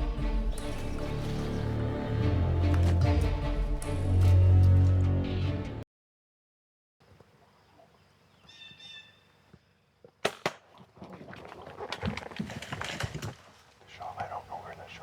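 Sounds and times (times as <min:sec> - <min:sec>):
crackling and rustling in brush: 0:11.0 - 0:14.9.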